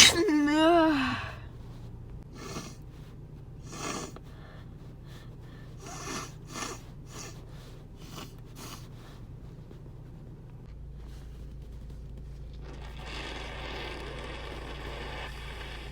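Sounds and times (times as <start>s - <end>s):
person sniffing congested nose: 0.0s - 0.4s, 2.4s - 9.2s.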